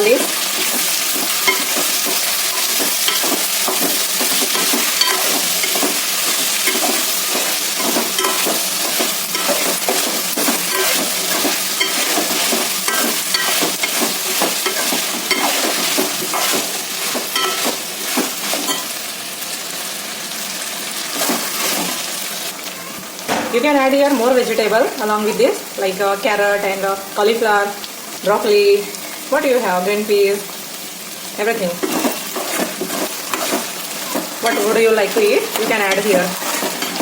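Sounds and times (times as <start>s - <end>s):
spoon scraping a pan: 0.0s - 19.0s, 31.7s - 37.0s
vegetables sizzling in oil: 0.0s - 37.0s.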